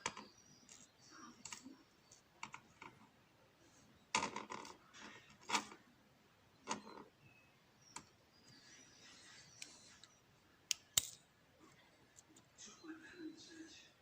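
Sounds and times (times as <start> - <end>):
faint scratching: 8.4 - 10.2.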